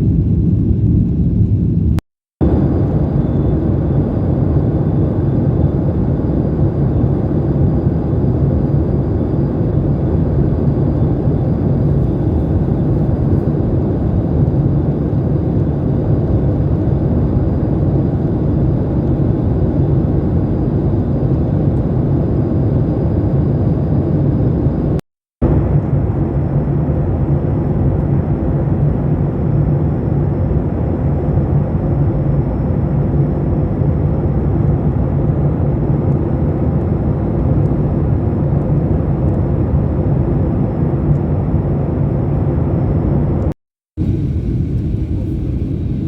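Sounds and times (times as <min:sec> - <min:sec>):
jet engine noise inside cabin: 0:00.0 - 0:46.0
faint high whine: 0:02.4 - 0:13.6.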